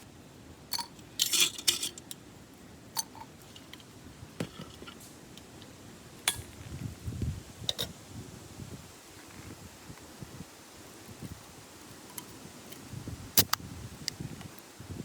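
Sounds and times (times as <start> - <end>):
small metal items clinking: 0.7 - 2.2.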